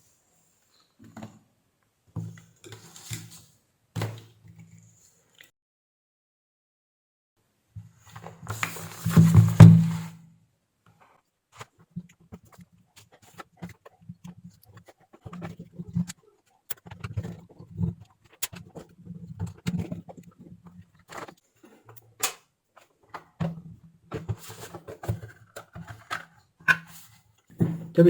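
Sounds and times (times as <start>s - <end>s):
plastic case clicking and scraping: 12.4s - 27.2s.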